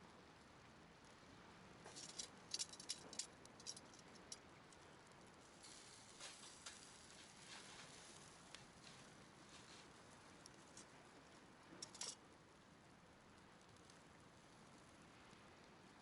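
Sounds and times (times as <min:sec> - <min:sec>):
faint steady hiss: 0:00.0 - 0:16.0
sharp clicks and crackles: 0:01.9 - 0:05.4, 0:11.7 - 0:12.2.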